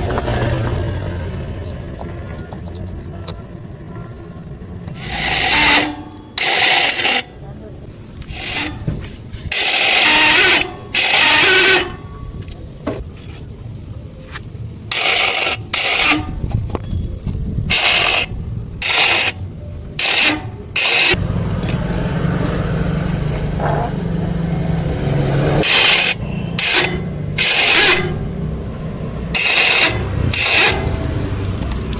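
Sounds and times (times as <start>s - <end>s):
starter motor growling: 4.8s - 7.4s, 25.5s - 31.9s
short scraping bursts: 4.9s - 7.4s, 8.2s - 12.1s, 14.9s - 16.4s, 17.7s - 19.4s, 20.0s - 21.2s, 25.6s - 28.3s, 29.3s - 31.2s.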